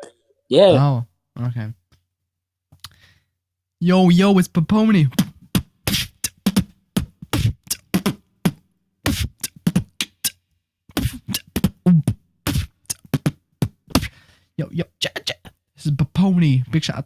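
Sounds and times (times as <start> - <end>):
vocal beatboxing: 5.1 - 14.1.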